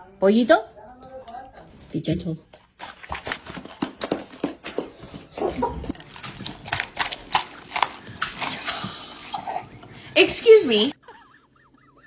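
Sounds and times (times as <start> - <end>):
dog crunching a treat: 2.5 - 9.6.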